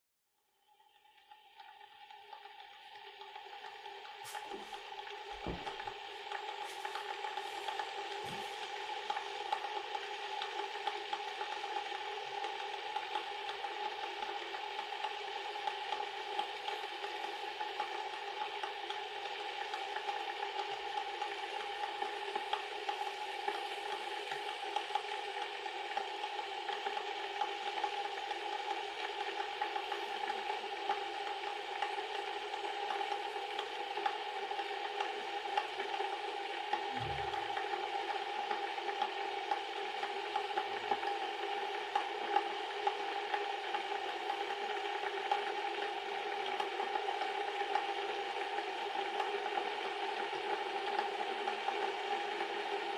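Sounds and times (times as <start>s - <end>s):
electric kettle rushing hum: 1.4s - 52.9s.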